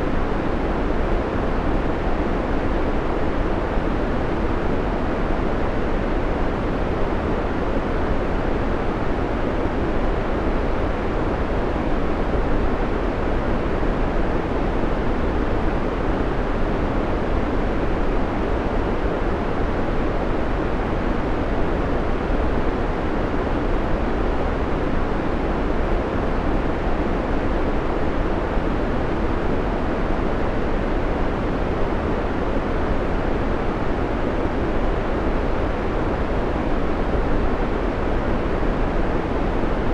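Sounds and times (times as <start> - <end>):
steady white noise: 0.0 - 39.9.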